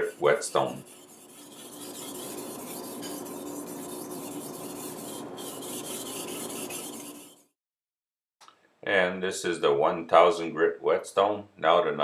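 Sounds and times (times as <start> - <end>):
knife scraping on whetstone: 0.0 - 7.5.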